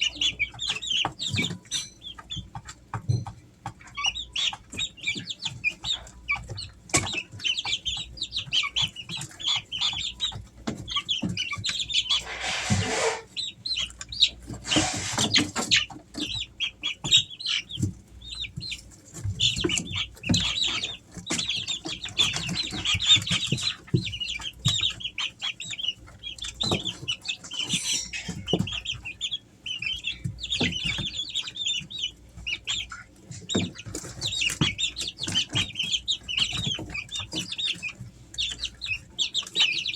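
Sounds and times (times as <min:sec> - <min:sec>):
chicks peeping and chirping: 0:00.0 - 0:39.9.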